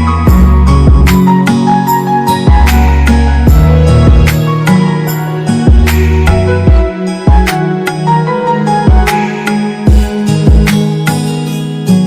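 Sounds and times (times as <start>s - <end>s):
background music with steady beat: 0.0s - 12.0s.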